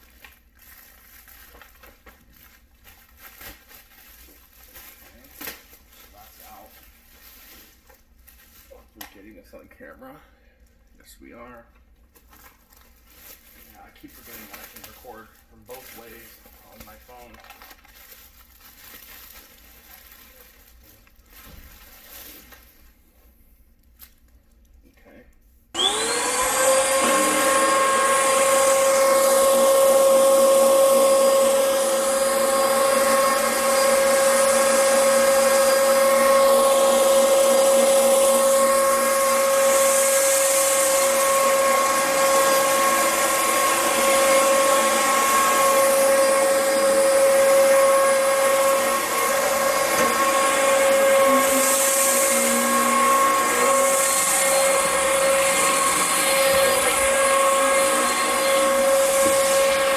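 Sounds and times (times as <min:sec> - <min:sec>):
vacuum cleaner motor whining: 0:25.8 - 0:59.9.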